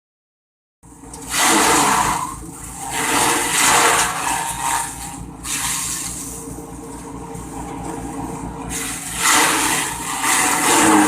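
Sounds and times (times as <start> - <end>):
grass chopper machine humming: 0.9 - 11.0
grass being shredded: 1.1 - 11.0.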